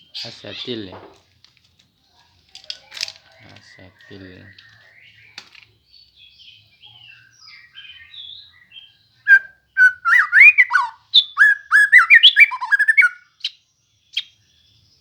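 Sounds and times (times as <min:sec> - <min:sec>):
bird whistling song: 0:06.2 - 0:14.6.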